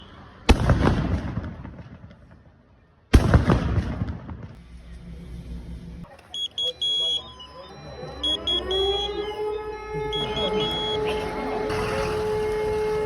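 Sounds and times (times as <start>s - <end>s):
loud explosion bangs: 0.5s - 2.1s, 3.1s - 4.6s.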